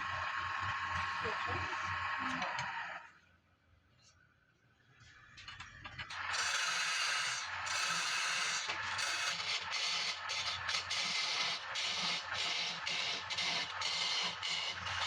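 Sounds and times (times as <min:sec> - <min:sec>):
lathe tool cutting wood: 0:06.1 - 0:15.0.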